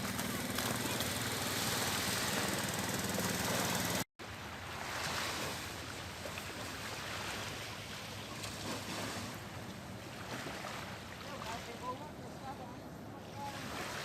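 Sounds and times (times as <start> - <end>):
steady engine hum: 0.0 - 4.0
rush of wind and water: 0.0 - 14.0.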